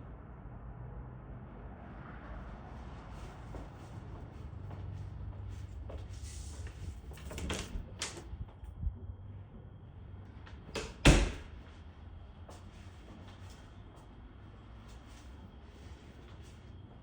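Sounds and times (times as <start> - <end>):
door thumping shut: 10.8 - 11.5.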